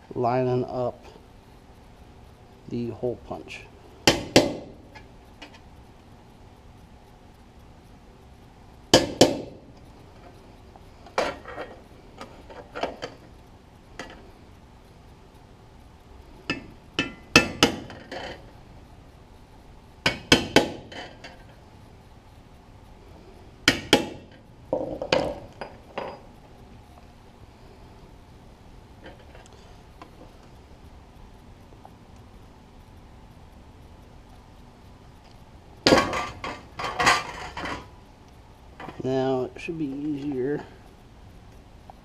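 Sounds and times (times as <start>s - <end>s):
hammer tapping metal punch: 4.1s - 4.7s, 9.0s - 9.6s, 16.5s - 18.2s, 20.1s - 21.1s, 23.7s - 26.2s.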